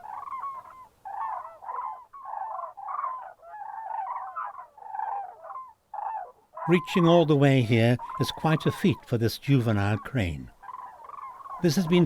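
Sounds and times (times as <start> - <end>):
cranes trumpeting calls: 0.0 - 7.1, 10.6 - 12.0.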